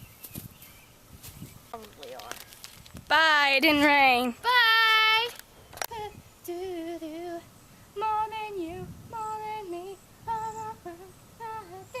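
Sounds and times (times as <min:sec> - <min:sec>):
high voice singing wordlessly: 0:04.3 - 0:12.0.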